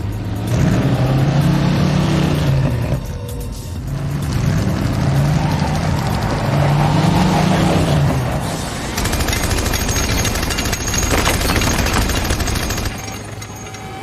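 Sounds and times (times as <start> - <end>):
heavy engine rumble: 0.0 - 14.0
rapid machine-gun fire: 8.9 - 13.2.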